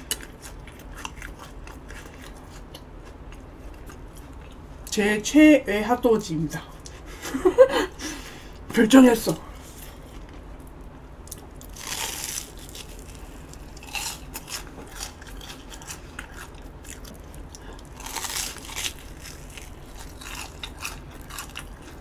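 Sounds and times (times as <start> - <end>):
chewing: 0.0 - 4.6, 11.3 - 22.0
crunchy bites: 11.3 - 22.0.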